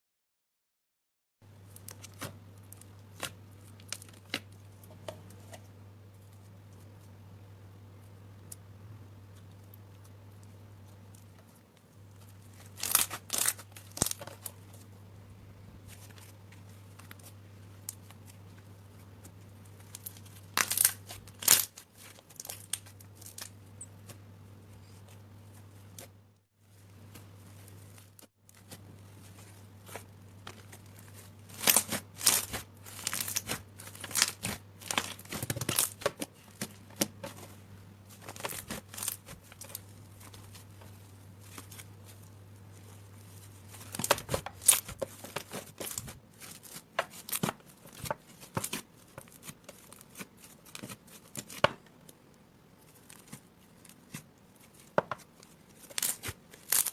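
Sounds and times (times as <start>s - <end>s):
slime crackling and popping: 12.1s - 14.6s, 19.6s - 23.6s, 27.1s - 37.5s, 38.1s - 42.2s, 42.8s - 51.7s, 52.9s - 56.9s.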